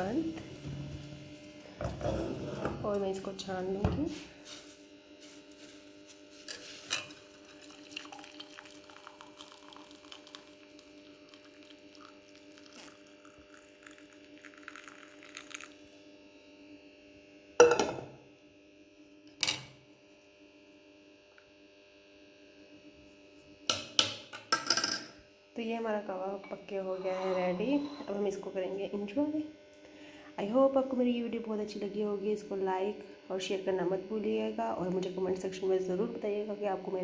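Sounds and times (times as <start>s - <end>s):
steady hum: 0.0s - 24.0s, 25.0s - 37.0s
liquid pouring trickle: 7.0s - 15.9s.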